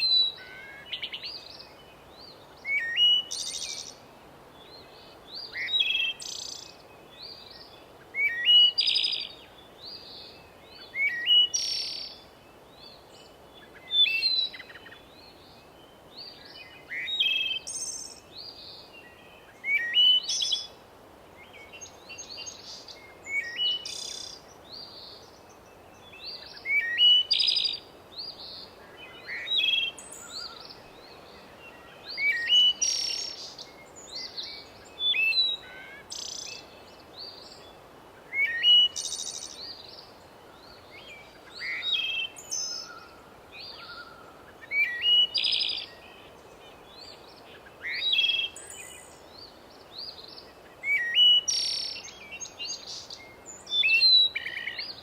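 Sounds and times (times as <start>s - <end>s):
faint steady hiss: 0.0s - 55.0s
songbirds singing: 0.0s - 55.0s.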